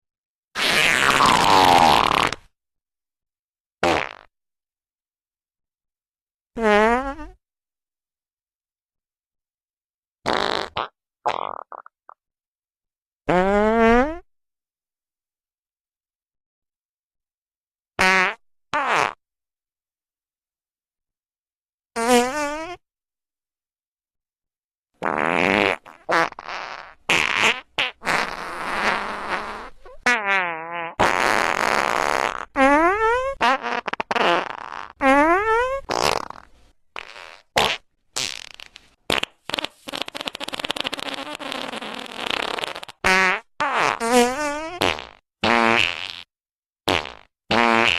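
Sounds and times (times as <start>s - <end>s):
farts: 0.6s - 2.6s, 3.8s - 4.3s, 6.6s - 7.4s, 10.2s - 12.2s, 13.3s - 14.3s, 18.0s - 19.2s, 22.0s - 22.8s, 25.0s - 46.3s, 46.9s - 47.9s.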